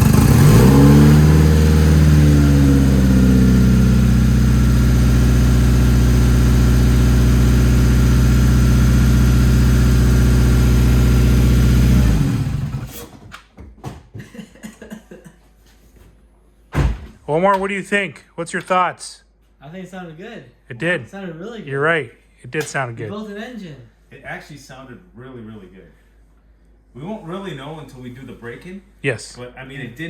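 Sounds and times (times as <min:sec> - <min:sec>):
car engine idling: 0:00.0 - 0:12.9.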